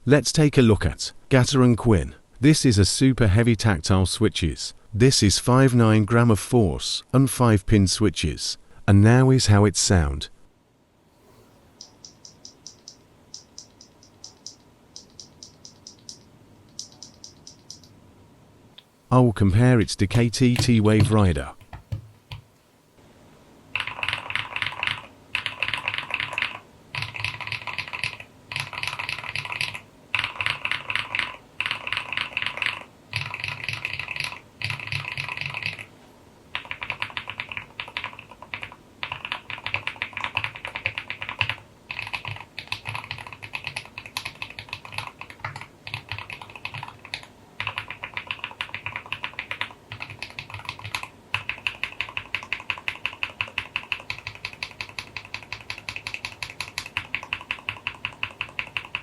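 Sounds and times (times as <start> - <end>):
typing on mechanical keyboard: 16.8 - 17.9, 23.8 - 35.9, 36.5 - 59.0.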